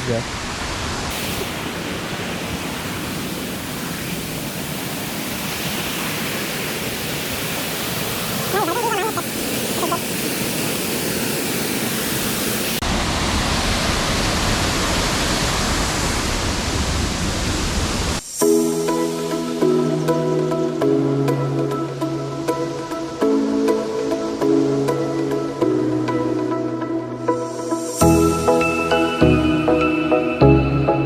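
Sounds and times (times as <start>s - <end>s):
waterfall rushing: 0.3s - 18.2s
short pitched call: 8.5s - 10.0s.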